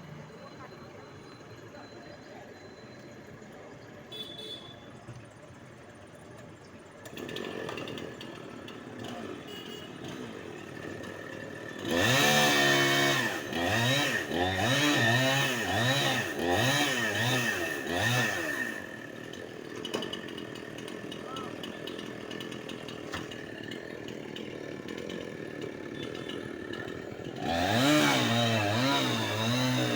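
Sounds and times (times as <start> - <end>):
chainsaw engine revving: 7.0 - 29.9.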